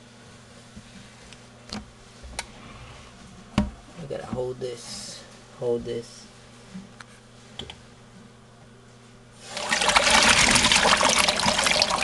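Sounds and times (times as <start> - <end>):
water rushing into a bucket: 9.4 - 12.0.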